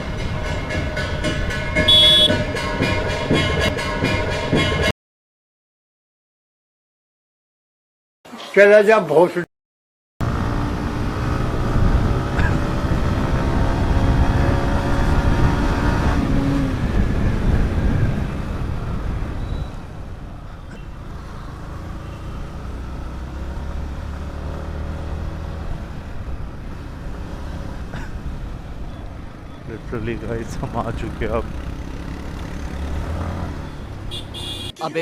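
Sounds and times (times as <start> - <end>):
wind and road noise: 0.0 - 4.9, 10.2 - 35.0
motorcycle engine running: 28.8 - 34.7.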